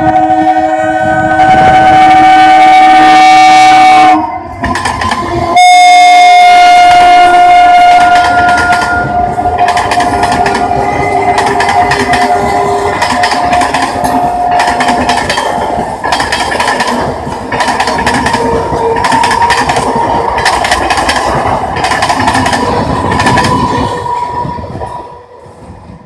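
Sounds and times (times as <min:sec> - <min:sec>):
electric train running on track: 0:00.0 - 0:26.0
steady train whine: 0:00.0 - 0:26.0
wheels clacking over rail joints: 0:04.5 - 0:05.6, 0:06.9 - 0:25.0.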